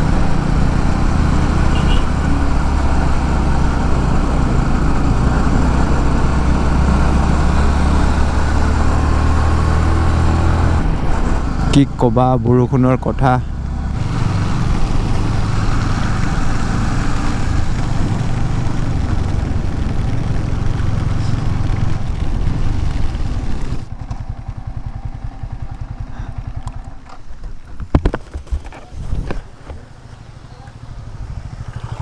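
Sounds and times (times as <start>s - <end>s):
motorcycle engine running: 0.0s - 27.9s, 29.5s - 32.0s
wind rush on microphone: 17.1s - 23.9s, 27.8s - 29.6s.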